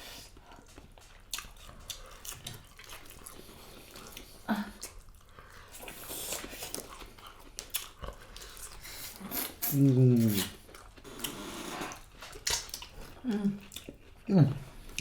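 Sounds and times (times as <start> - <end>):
person chewing food: 0.0 - 15.0
wet mouth clicks and smacks: 12.4 - 13.0.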